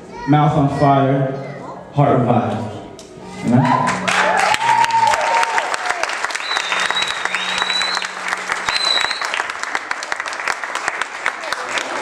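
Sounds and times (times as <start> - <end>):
audience clapping and cheering: 3.6 - 12.0
high whistle from crowd: 6.3 - 9.6.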